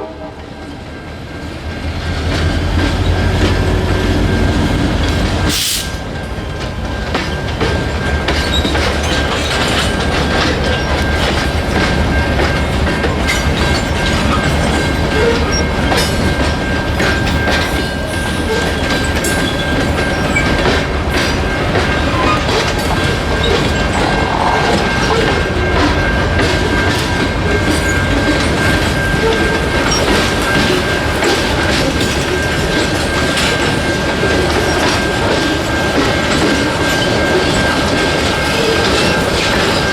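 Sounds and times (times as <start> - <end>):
wheels clicking over rail joints: 4.9 - 39.9
burst of hiss: 5.5 - 6.0.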